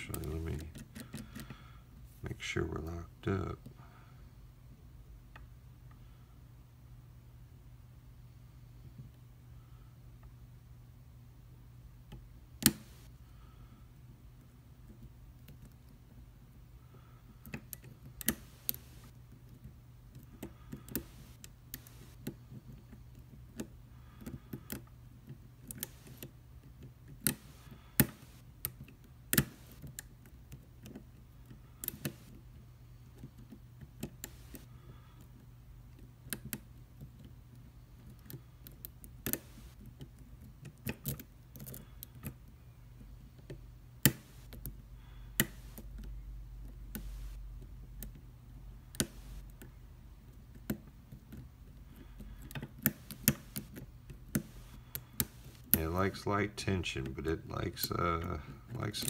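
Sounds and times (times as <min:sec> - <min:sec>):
faint low hum: 0:00.0 - 0:59.0
lock picks clicking: 0:33.1 - 0:42.5.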